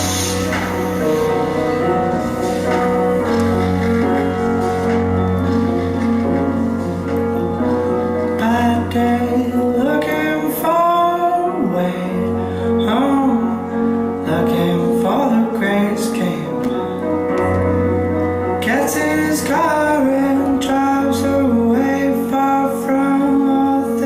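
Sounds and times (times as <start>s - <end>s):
instrumental dance music: 0.0s - 9.8s.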